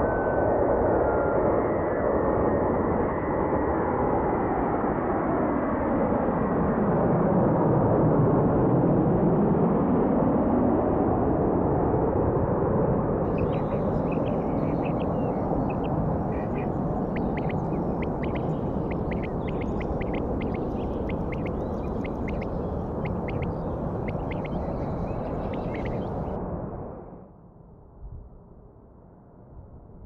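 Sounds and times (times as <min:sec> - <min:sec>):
aircraft engine roar: 0:09.4 - 0:27.0
bird chirps: 0:13.3 - 0:26.4.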